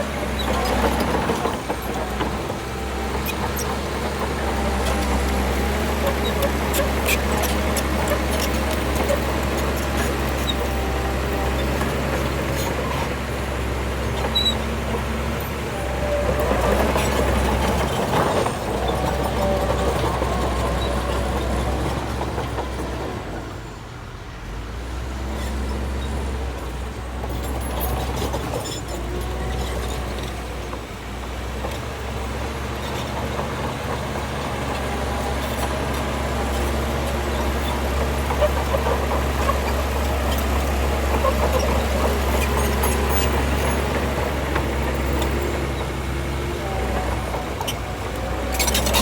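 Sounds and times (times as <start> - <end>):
bulldozer diesel engine running: 0.0 - 49.0
metallic clicks and squeaks: 36.5 - 44.1, 47.6 - 49.0.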